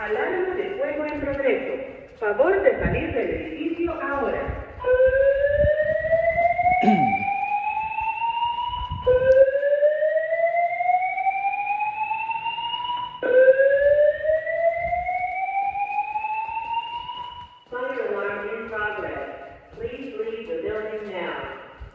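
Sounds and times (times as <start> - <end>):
fire alarm whoop tone: 4.7 - 17.7.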